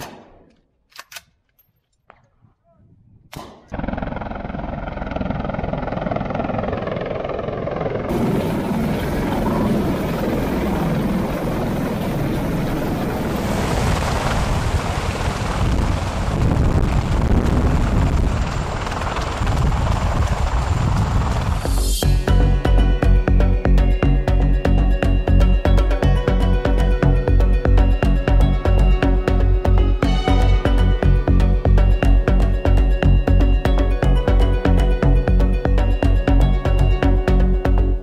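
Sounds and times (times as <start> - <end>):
helicopter rotor and turbine din: 3.4 - 38.0.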